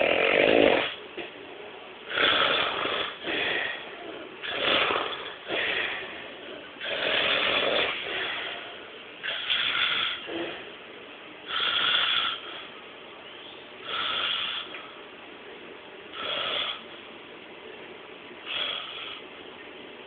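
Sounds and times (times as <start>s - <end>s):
snoring: 0.0s - 1.0s, 2.1s - 8.6s, 9.2s - 10.7s, 11.5s - 12.4s, 13.9s - 14.7s, 16.2s - 16.8s, 18.5s - 19.2s.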